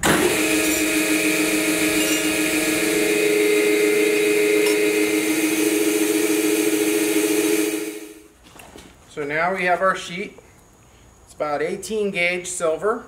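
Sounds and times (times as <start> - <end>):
rolling mill humming: 0.0 - 8.4.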